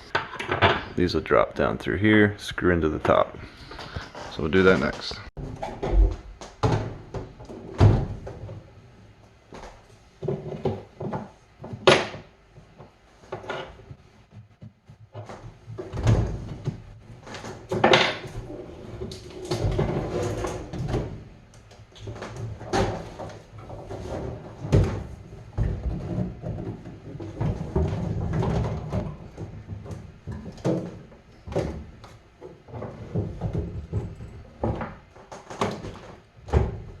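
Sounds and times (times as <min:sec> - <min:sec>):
knocks and clunks of handling: 0:00.1 - 0:01.0, 0:09.5 - 0:37.0.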